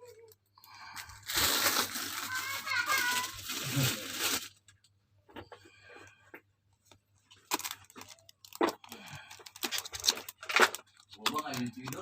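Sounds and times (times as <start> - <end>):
packaging ripping and crinkling: 0.9 - 4.6, 7.3 - 12.0
packaging rustling: 1.0 - 4.7, 7.3 - 12.0.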